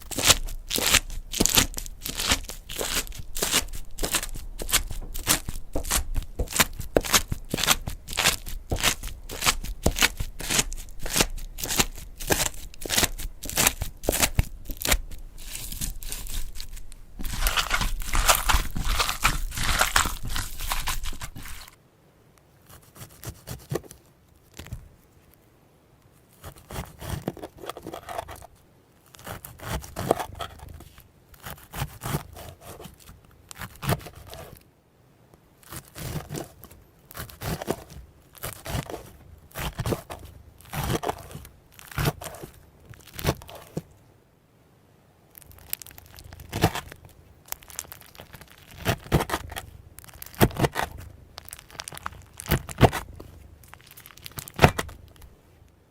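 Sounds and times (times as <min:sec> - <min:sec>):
slime crackling and popping: 0:00.0 - 0:21.8, 0:38.3 - 0:38.9, 0:41.7 - 0:43.4, 0:45.3 - 0:55.3.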